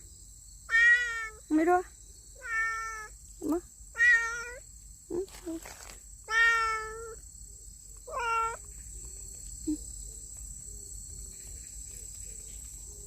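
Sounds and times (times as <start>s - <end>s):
cat meowing: 0.7s - 1.4s, 2.4s - 3.1s, 4.0s - 4.6s, 6.3s - 7.2s, 8.1s - 8.6s.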